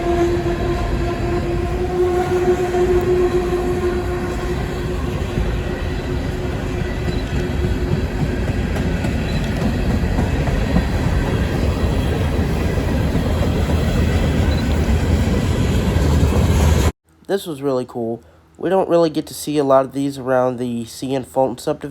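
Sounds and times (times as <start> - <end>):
freight train rumbling past: 0.0 - 16.9
wheels clattering on rails: 2.9 - 15.4.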